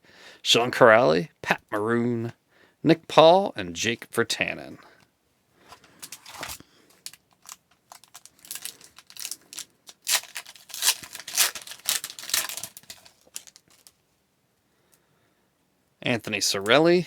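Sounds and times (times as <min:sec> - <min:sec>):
wrapper tearing and crinkling: 0:06.0 - 0:14.0.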